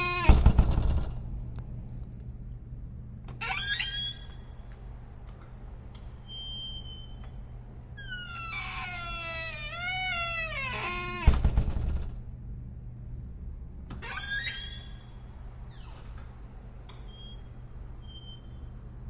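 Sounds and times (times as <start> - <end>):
door hinges squeaking: 0.0 - 1.1, 3.3 - 4.6, 6.2 - 12.1, 13.9 - 18.8
door banging shut: 0.0 - 1.2, 8.6 - 12.2.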